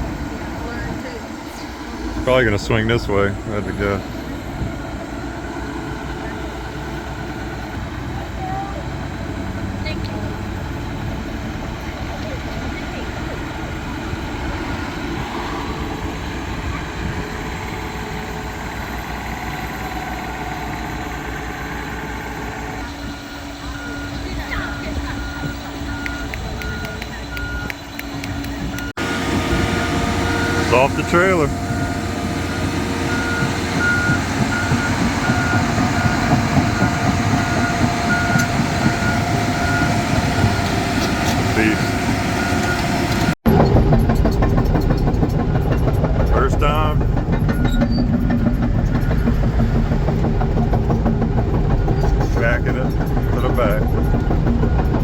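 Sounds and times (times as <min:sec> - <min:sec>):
excavator diesel engine running: 0:00.0 - 0:55.0
motion alarm beeping: 0:22.9 - 0:43.4.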